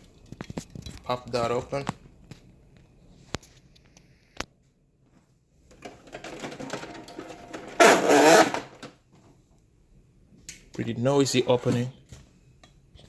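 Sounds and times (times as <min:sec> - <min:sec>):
printer motor whirring: 0:07.4 - 0:08.7.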